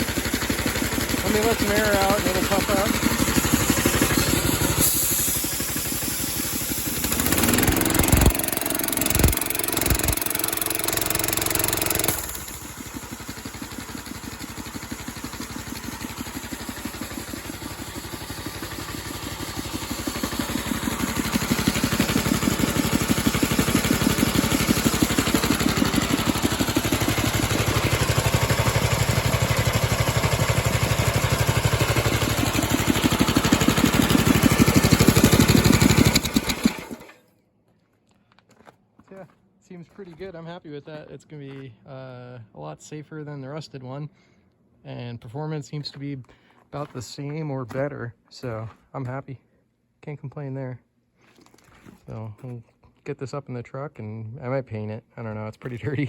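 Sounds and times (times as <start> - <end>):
compressor engine running: 0.0 - 37.2
compressed air hissing: 3.2 - 10.1.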